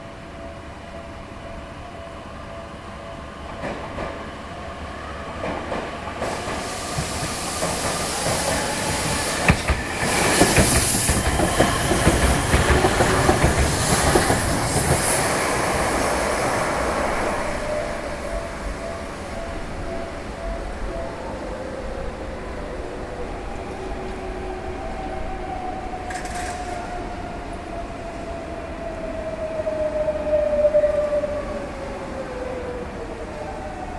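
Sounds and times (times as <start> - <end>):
train passing: 0.0 - 33.9
sharp clacks of train wheels: 3.6 - 4.3, 5.4 - 20.1, 26.0 - 27.1.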